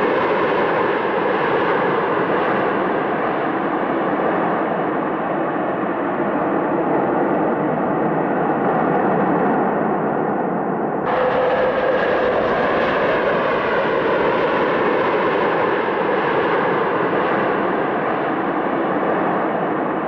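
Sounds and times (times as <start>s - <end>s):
jet engines roaring: 11.1s - 20.0s.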